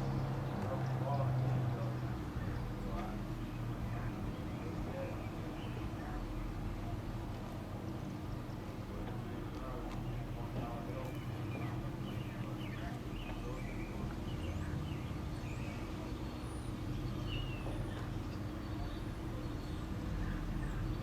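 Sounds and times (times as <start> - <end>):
steady low hum: 0.0 - 21.0
birds chirping and whistling: 11.0 - 21.0.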